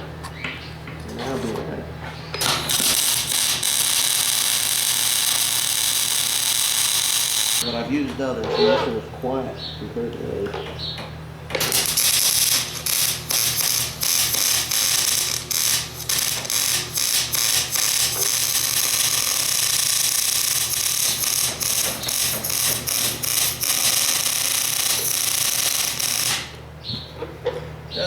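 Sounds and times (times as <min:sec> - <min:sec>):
welding arc crackling: 0:02.4 - 0:07.7, 0:11.5 - 0:26.7.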